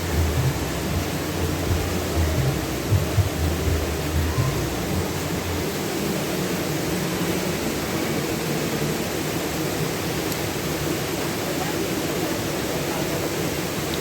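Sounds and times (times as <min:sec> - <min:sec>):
low rumble: 0:00.0 - 0:05.7
rain hissing: 0:00.0 - 0:14.0.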